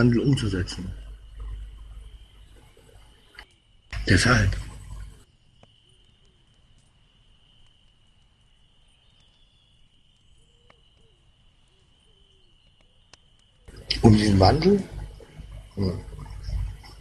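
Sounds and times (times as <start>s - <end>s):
thin high whine: 0.0s - 7.0s, 11.9s - 17.0s.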